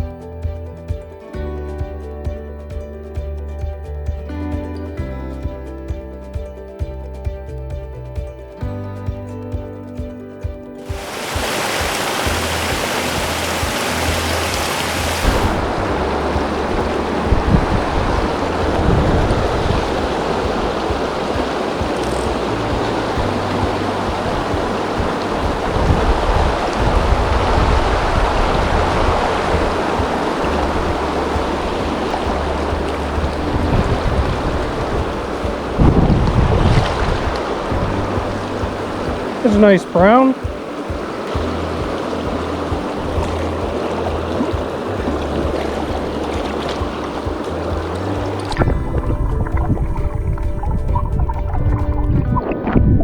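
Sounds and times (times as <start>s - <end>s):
low background music: 0.0s - 53.0s
creek rushing: 10.8s - 53.0s.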